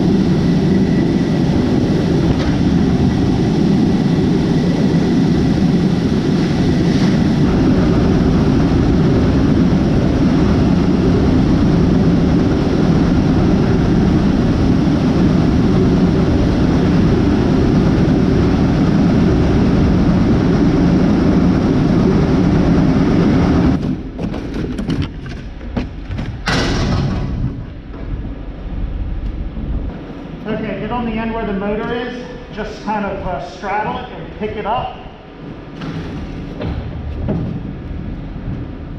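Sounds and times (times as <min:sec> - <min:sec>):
knocks: 0:35.8 - 0:37.9.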